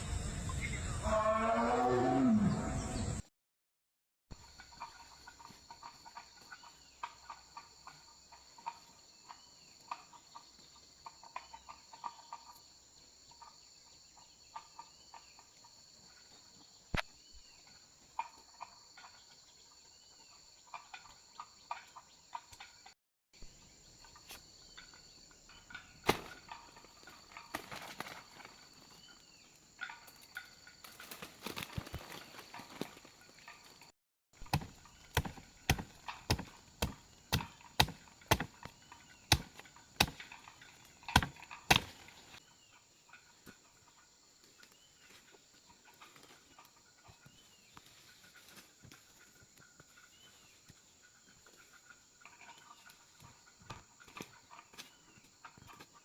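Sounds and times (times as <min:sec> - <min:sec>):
insects trilling: 0:00.0 - 0:03.2, 0:23.4 - 0:48.6.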